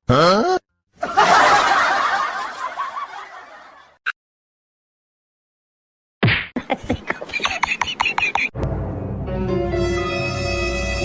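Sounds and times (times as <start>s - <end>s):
group of people laughing: 1.0s - 4.0s, 6.6s - 8.6s.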